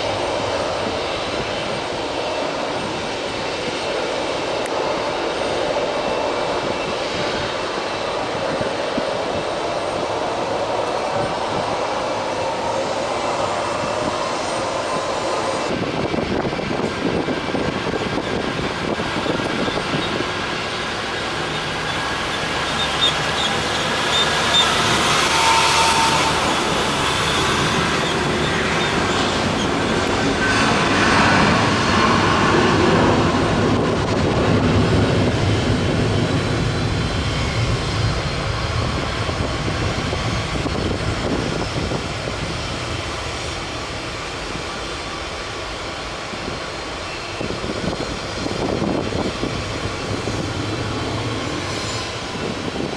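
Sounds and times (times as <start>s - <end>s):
jet engines rumbling and whining: 0.0s - 52.9s.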